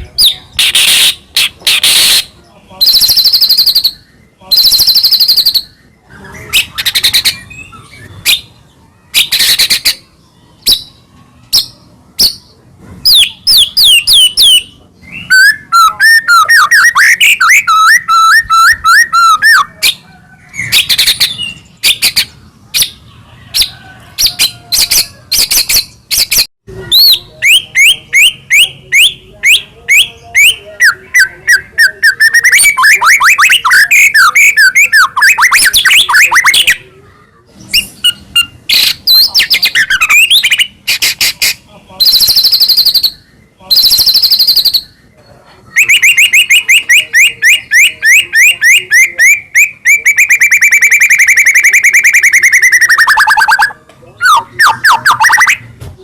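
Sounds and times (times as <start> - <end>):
harsh scratchy bird calls: 0.0 - 55.8
bird singing whistled song: 1.8 - 5.8, 13.1 - 19.7, 42.0 - 45.0, 45.7 - 55.7.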